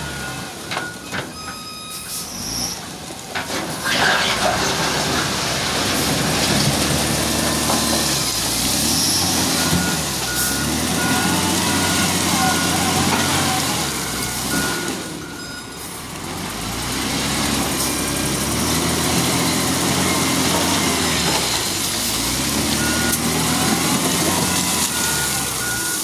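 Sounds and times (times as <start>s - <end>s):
reversing alarm beeping: 0.0s - 2.5s, 9.0s - 16.0s, 22.8s - 26.0s
wheel loader diesel engine: 0.0s - 26.0s.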